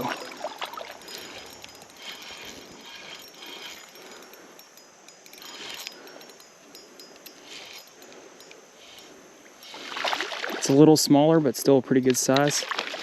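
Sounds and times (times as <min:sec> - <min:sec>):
small splashes: 0:00.0 - 0:01.0, 0:09.7 - 0:10.8, 0:12.4 - 0:13.0
creek water running: 0:00.0 - 0:04.3, 0:09.6 - 0:13.0
fishing reel clicks: 0:00.0 - 0:10.0.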